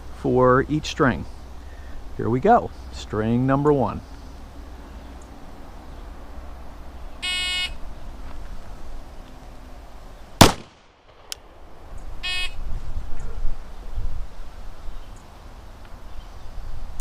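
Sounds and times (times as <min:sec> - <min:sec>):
loud pistol shot: 0:10.4 - 0:11.4.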